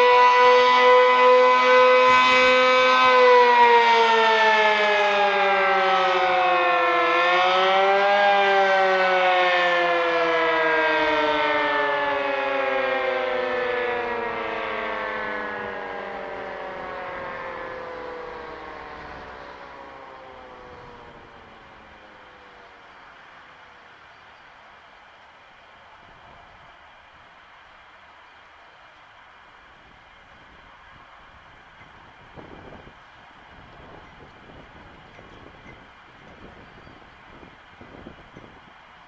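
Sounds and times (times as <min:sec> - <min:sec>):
warning siren winding down: 0:00.0 - 0:24.3, 0:30.4 - 0:38.8.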